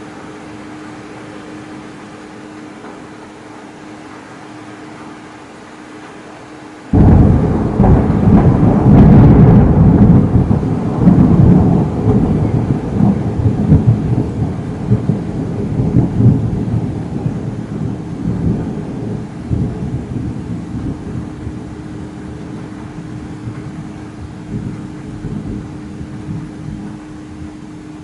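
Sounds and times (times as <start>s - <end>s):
thunder rumbling: 6.9s - 28.0s.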